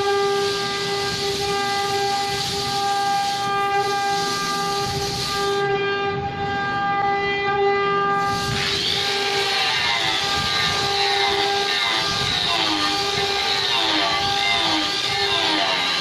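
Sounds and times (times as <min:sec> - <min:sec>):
hissing rush: 0:00.3 - 0:05.6, 0:08.2 - 0:16.0
sawmill saw whining: 0:08.2 - 0:16.0.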